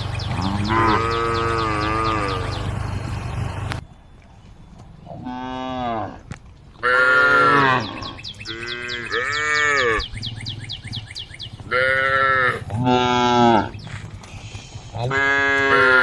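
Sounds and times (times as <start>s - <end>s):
cows mooing: 0.0s - 2.9s, 5.1s - 10.1s, 11.5s - 14.1s, 14.8s - 16.0s.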